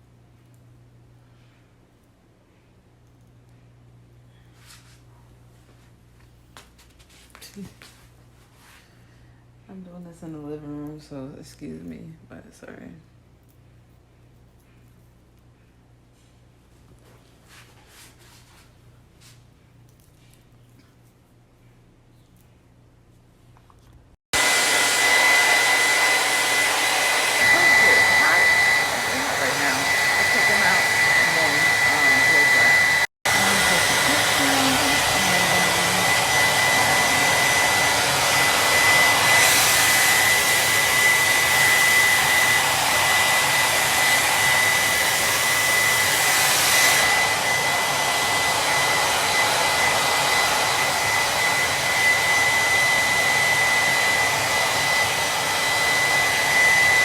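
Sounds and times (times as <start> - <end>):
blow dryer running: 24.3 - 57.0.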